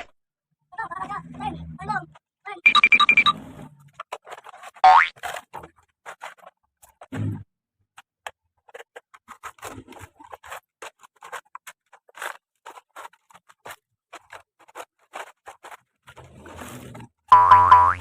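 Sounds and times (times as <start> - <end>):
toy vehicles scraping in sand: 2.8 - 6.4, 9.5 - 17.8.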